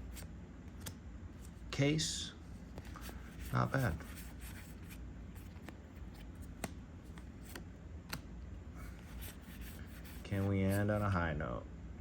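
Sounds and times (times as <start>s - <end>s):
cards rustling: 2.5s - 11.2s
sharp card snaps: 6.4s - 8.3s.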